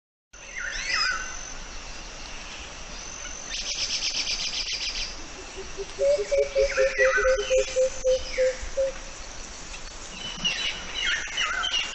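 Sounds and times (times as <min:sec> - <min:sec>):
high insect tone: 0:00.4 - 0:11.9
whistled bird notes: 0:05.8 - 0:09.0.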